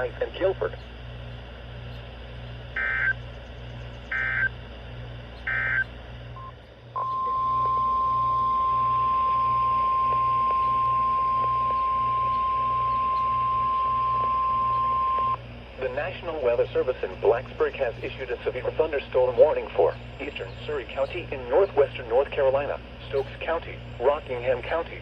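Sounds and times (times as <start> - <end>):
warbling data bursts: 2.7 - 3.2, 4.0 - 4.6, 5.4 - 19.0
steady alarm tone: 2.7 - 3.3, 4.0 - 4.6, 5.4 - 15.5.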